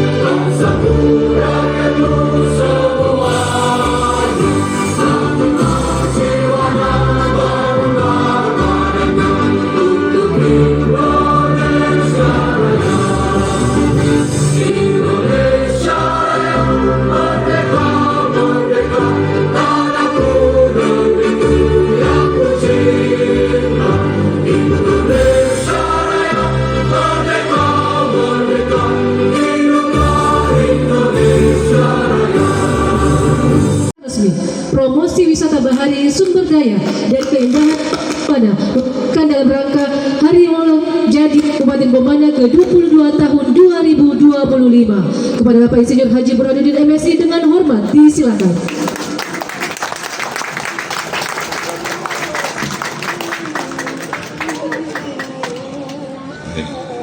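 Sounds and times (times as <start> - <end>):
choir singing sustained chords: 0.0 - 34.0.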